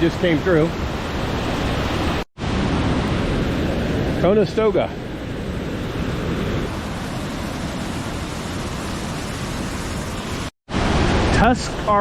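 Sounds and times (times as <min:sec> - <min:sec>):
waterfall roaring: 0:06.2 - 0:12.0.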